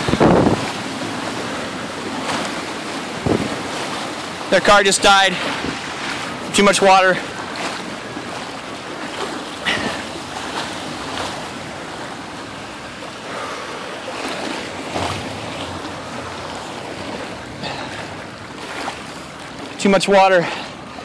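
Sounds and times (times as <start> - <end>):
rushing floodwater: 0.0 - 21.0
water splashes: 0.0 - 21.0.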